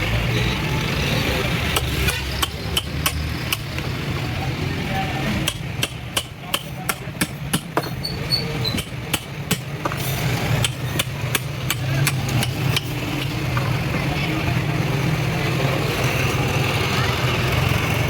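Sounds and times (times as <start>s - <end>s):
hammer strikes: 1.7s - 3.8s, 5.3s - 13.7s.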